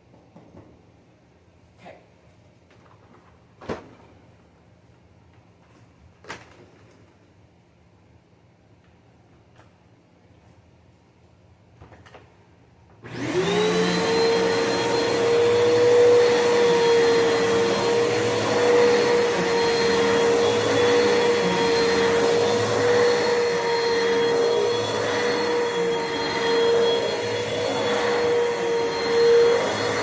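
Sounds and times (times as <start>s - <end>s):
vacuum cleaner motor whine: 13.0s - 30.0s.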